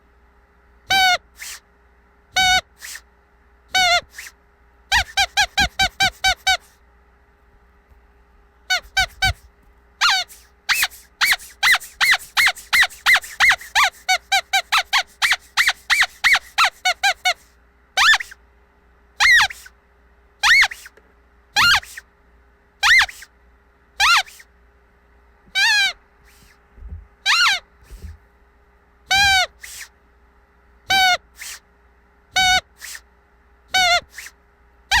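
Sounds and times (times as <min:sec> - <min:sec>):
squeaky dog toy squeaks: 0:00.9 - 0:01.6, 0:02.4 - 0:03.0, 0:03.7 - 0:06.8, 0:08.7 - 0:09.4, 0:10.0 - 0:18.4, 0:19.2 - 0:19.7, 0:20.4 - 0:20.9, 0:21.6 - 0:22.0, 0:22.8 - 0:23.3, 0:24.0 - 0:24.5, 0:25.5 - 0:26.5, 0:27.2 - 0:28.1, 0:29.1 - 0:29.9, 0:30.9 - 0:31.6, 0:32.3 - 0:33.0, 0:33.7 - 0:35.0.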